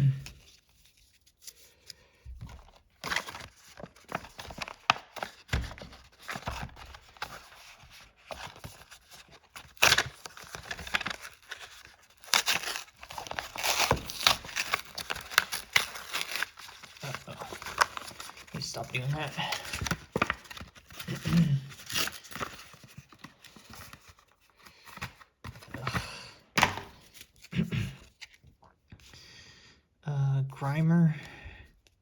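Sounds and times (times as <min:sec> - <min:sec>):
foil wrapper crinkling and tearing: 0:02.6 - 0:24.1.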